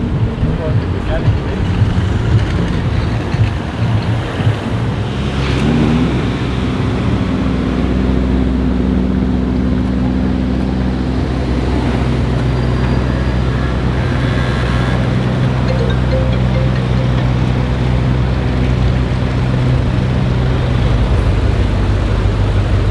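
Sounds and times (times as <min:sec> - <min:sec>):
vehicle engine running: 0:15.7 - 0:22.9.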